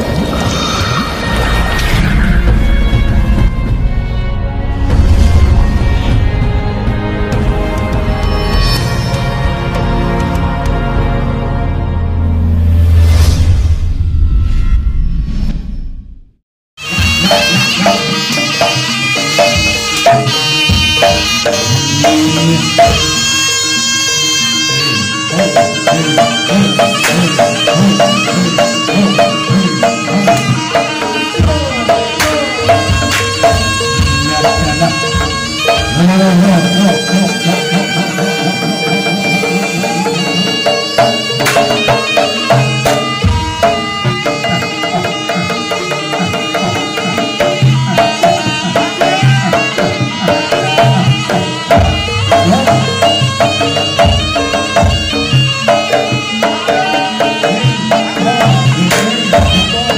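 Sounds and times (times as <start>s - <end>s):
pitched percussion strikes: 0.0s - 11.3s, 16.8s - 59.9s
gong-chime strokes: 8.1s - 10.0s
hand drum rhythms: 16.8s - 23.8s, 24.7s - 59.9s
reedy trumpet melody: 16.8s - 59.9s.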